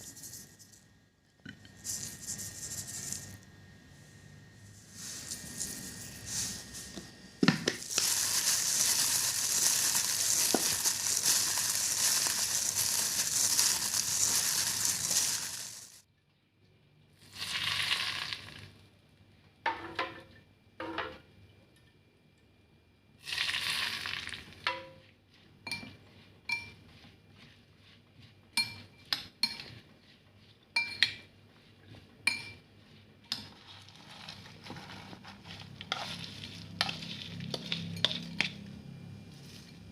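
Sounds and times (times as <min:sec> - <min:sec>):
food sizzling in hot oil: 0:07.8 - 0:16.0, 0:17.2 - 0:18.6, 0:23.2 - 0:24.5.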